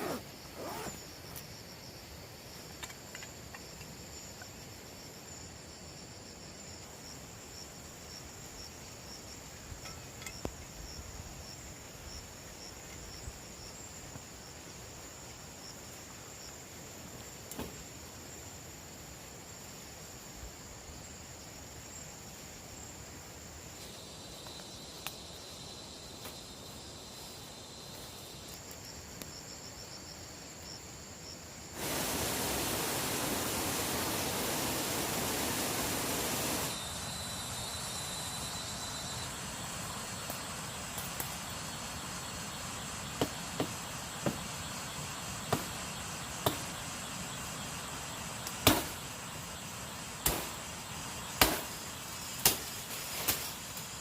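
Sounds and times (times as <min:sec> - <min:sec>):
insects calling: 0:00.0 - 0:54.0
loud even hiss: 0:31.7 - 0:54.0.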